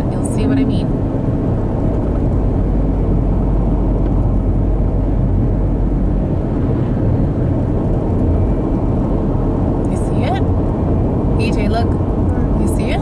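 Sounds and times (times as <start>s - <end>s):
car engine and tyre noise: 0.0s - 13.0s.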